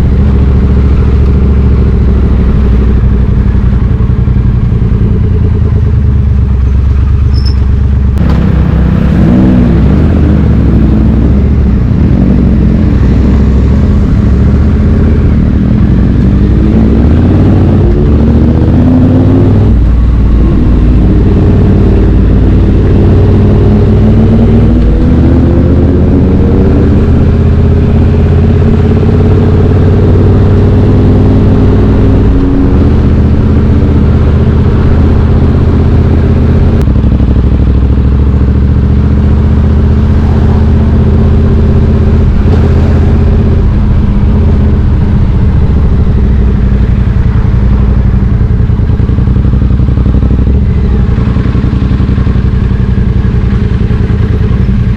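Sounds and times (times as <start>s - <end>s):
motorcycle engine accelerating: 0.0s - 54.9s.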